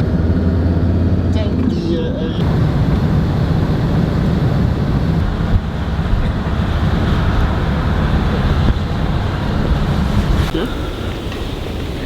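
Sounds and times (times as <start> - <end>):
engine and road rumble: 0.0 - 12.0
wind buffeting microphone: 2.4 - 12.0.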